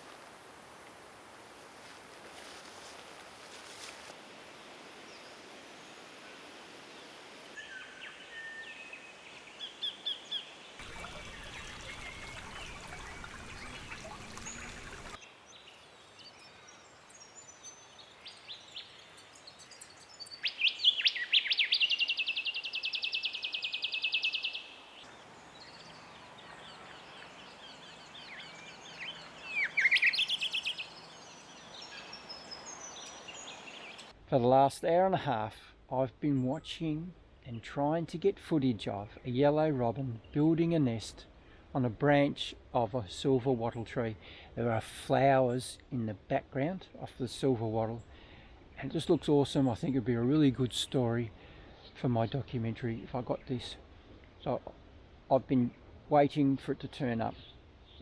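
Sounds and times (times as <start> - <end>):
background hiss: 0.0 - 7.6, 10.8 - 38.3
bird chirps: 10.8 - 15.2, 25.6 - 34.1
bird pulsing trill: 10.8 - 15.2.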